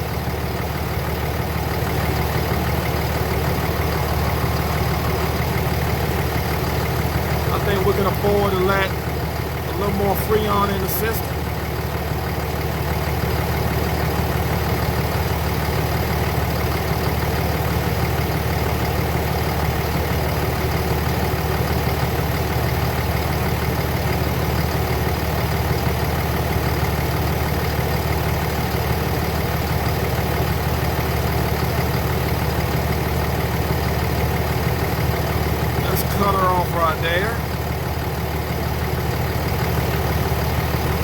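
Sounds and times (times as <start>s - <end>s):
car engine idling: 0.0s - 41.0s
air-conditioning compressor running: 1.5s - 17.0s.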